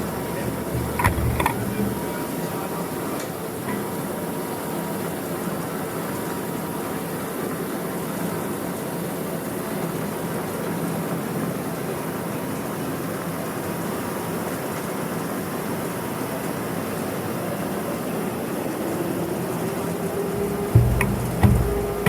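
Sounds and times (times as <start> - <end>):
faint low hum: 0.0 - 3.0, 18.4 - 22.0
industrial machinery running: 0.0 - 4.3, 16.8 - 22.0.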